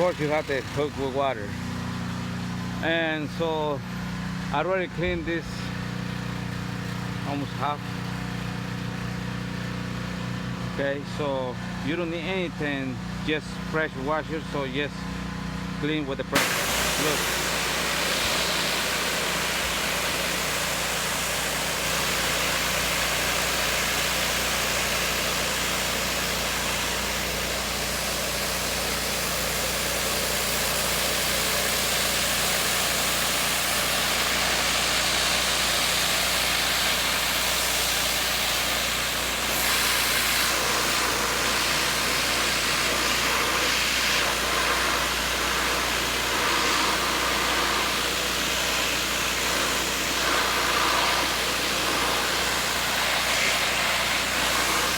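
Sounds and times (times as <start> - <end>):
pressure washer spray hiss: 16.4 - 54.9.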